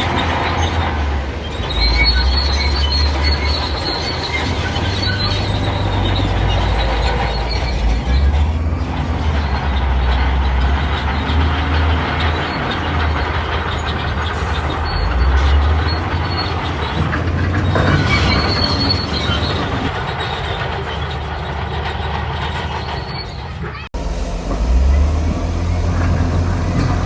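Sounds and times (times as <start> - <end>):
diesel engine rumbling: 0.0 - 27.0
steel tracks clanking and squealing: 0.0 - 27.0.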